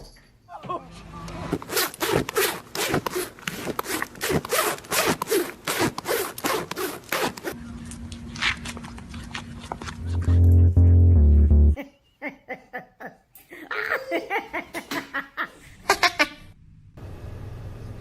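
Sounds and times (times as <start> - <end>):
loud low buzzing tone: 10.0 - 11.8.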